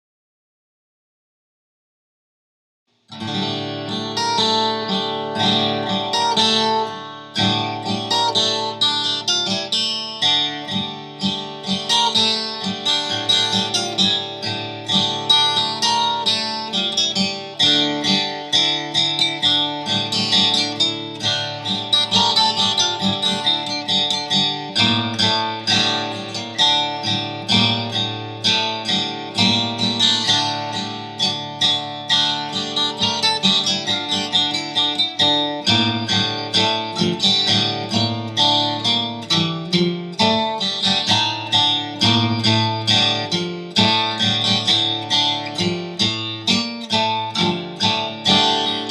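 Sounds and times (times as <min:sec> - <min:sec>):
acoustic guitar music: 0:03.1 - 0:48.9.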